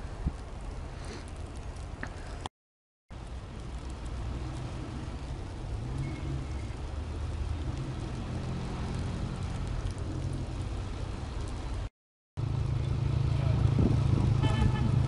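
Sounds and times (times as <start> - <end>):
car engines rumbling: 3.2 - 15.0.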